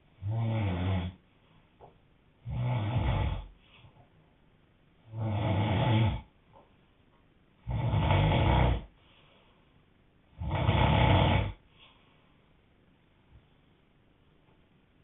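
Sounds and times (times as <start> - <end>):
man snoring loudly: 0.2 - 1.2, 2.4 - 3.5, 5.1 - 6.3, 7.6 - 8.9, 10.4 - 11.6.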